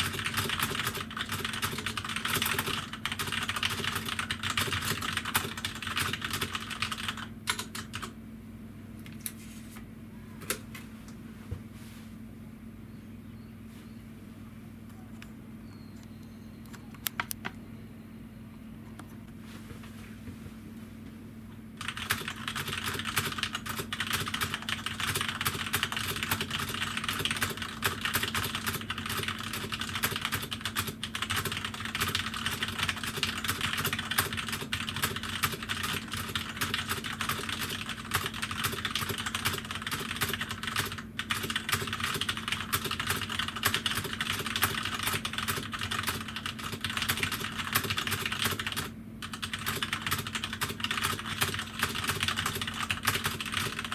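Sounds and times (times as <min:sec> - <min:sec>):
mechanical keyboard typing: 0:00.0 - 0:08.1, 0:21.8 - 0:53.9
steady low hum: 0:00.0 - 0:53.9.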